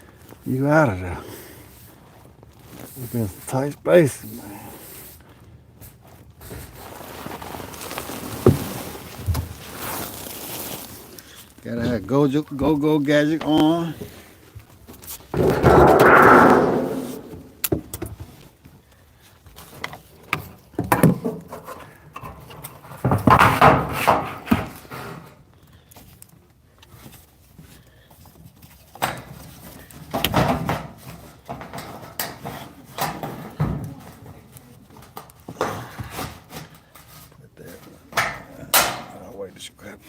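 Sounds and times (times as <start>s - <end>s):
tools clattering: 15.3s - 17.6s
knocks and clicks from tools: 15.4s - 18.2s.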